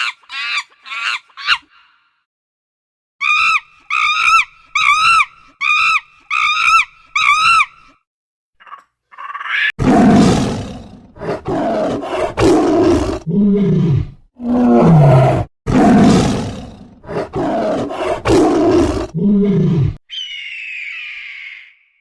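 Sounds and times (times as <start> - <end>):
short rising and falling animal calls: 3.2 - 7.9, 20.1 - 22.0.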